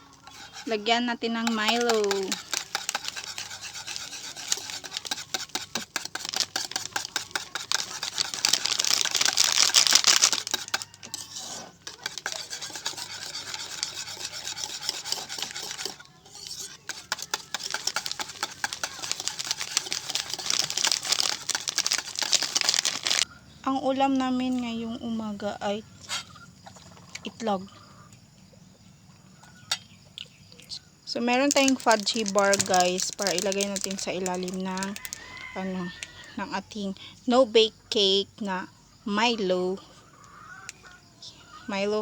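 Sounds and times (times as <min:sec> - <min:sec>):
utensil scraping bowl: 0:00.0 - 0:23.3, 0:31.3 - 0:36.4.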